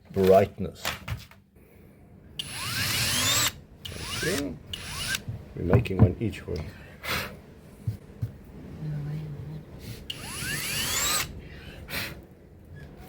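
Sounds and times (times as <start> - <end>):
small power drill whining: 2.4 - 5.2, 10.0 - 11.4.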